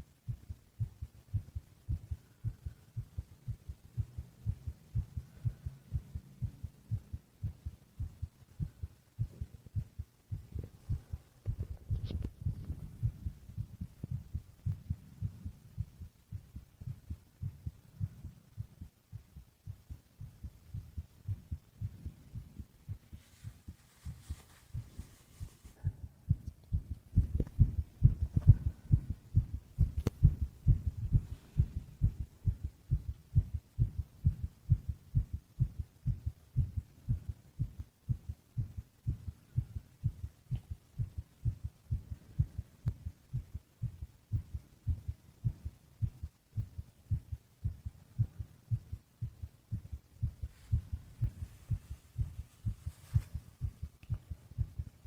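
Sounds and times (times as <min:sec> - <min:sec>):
heartbeat thuds: 0:00.0 - 0:55.0.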